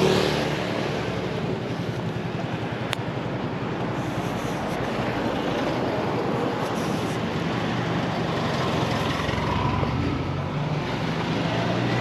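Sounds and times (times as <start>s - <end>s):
street noise: 0.0s - 12.0s.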